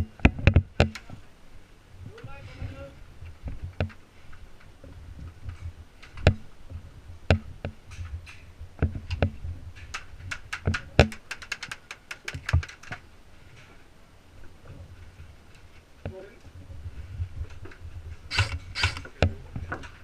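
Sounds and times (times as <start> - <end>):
sharp clicks: 9.1 - 13.0.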